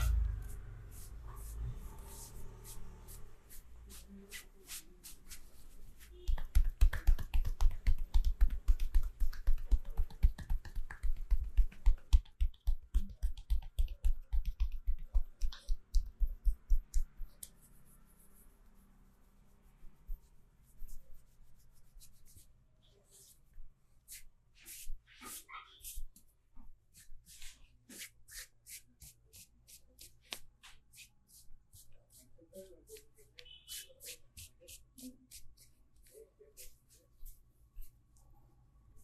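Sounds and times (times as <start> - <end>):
rapid percussive massage strikes: 6.3 - 17.5.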